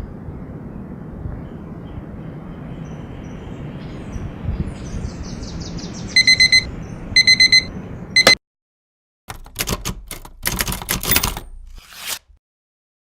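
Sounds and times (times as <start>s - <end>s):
alarm clock beeping: 6.2s - 8.4s.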